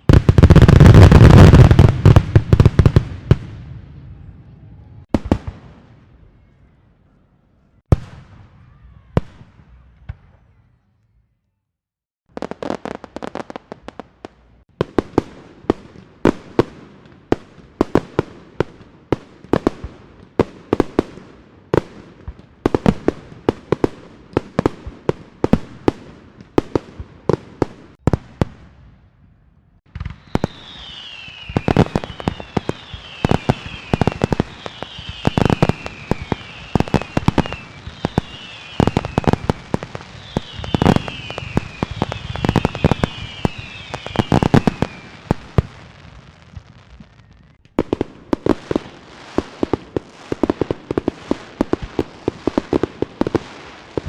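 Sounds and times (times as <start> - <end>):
fireworks bangs and crackling: 0.0 - 6.4, 7.8 - 10.6, 12.3 - 54.0
firework whistles falling in pitch: 30.0 - 45.4.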